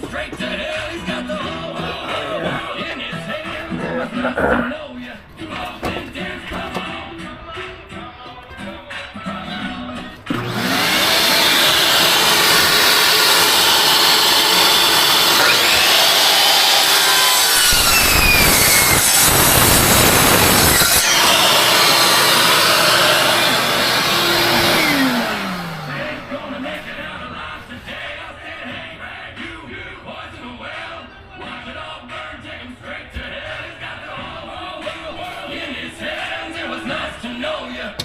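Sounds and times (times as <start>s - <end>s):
power saw cutting plywood: 10.3s - 27.1s.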